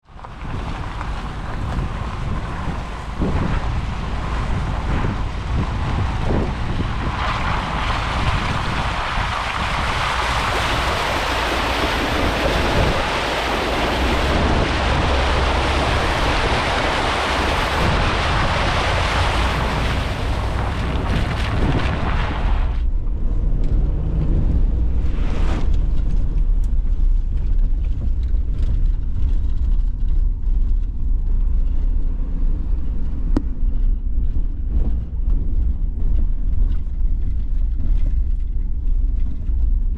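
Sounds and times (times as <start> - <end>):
road and engine rumble: 0.0 - 39.9
water spray rushing hiss: 9.6 - 21.8.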